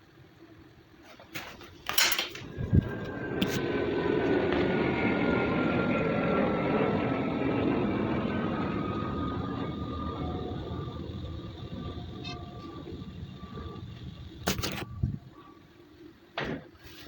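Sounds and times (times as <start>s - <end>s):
faint falling whine: 1.4s - 17.0s
aircraft passing rumble: 2.3s - 15.8s.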